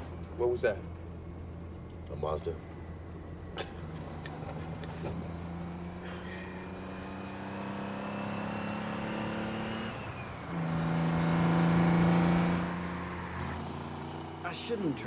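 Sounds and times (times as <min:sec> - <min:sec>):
truck diesel engine climbing: 0:00.0 - 0:15.0.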